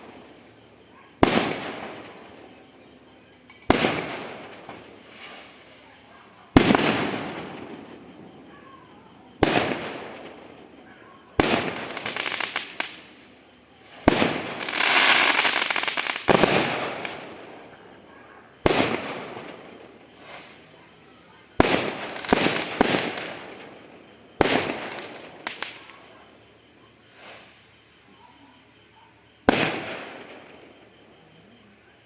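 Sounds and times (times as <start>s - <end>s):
fireworks banging: 1.2s - 2.5s, 3.5s - 5.6s, 6.5s - 8.2s, 11.4s - 13.1s, 14.0s - 17.7s, 18.6s - 20.5s, 21.6s - 25.9s
firework hiss: 3.6s - 5.9s, 11.4s - 17.7s, 18.6s - 20.9s, 21.6s - 25.9s, 27.0s - 28.0s.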